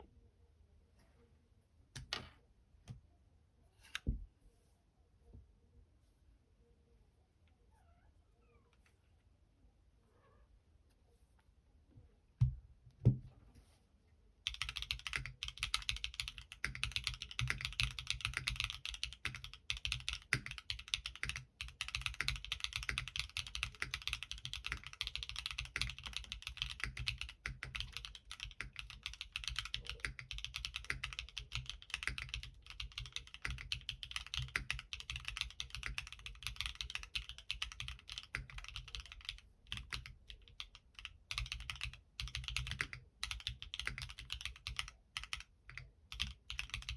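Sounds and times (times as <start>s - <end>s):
fast mechanical keyboard typing: 14.5s - 46.9s.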